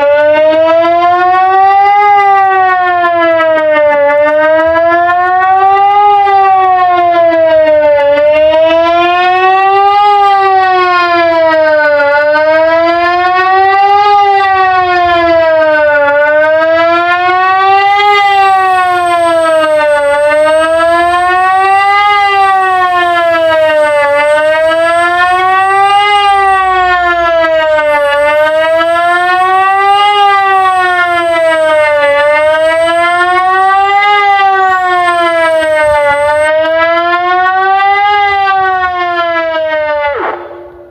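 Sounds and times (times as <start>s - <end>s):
civil defence siren wailing: 0.0s - 40.9s.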